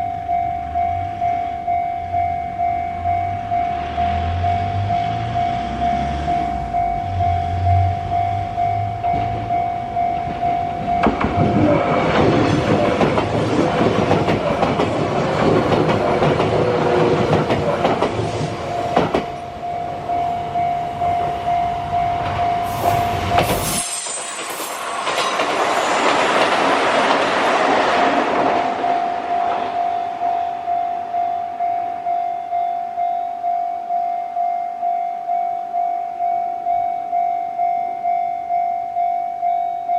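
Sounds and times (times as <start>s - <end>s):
railway crossing bell ringing: 0.0s - 26.7s, 28.3s - 39.9s
train wheels rumbling and clacking: 3.8s - 31.0s.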